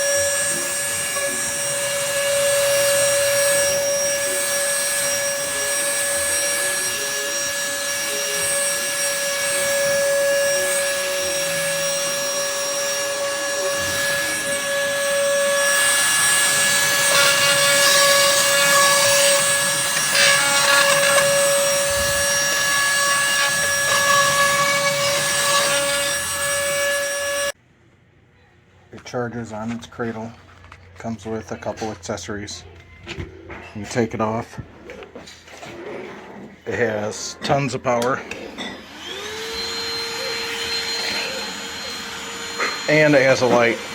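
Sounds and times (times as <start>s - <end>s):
handheld vacuum motor whine: 0.0s - 27.6s, 38.6s - 43.9s
vacuum nozzle scraping surface: 0.0s - 27.6s, 37.5s - 43.9s.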